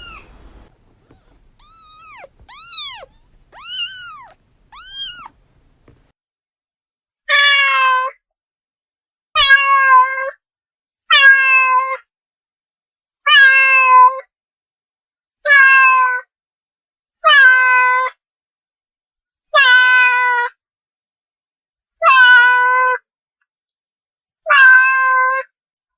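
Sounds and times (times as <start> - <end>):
cat meowing: 0.0 - 6.0.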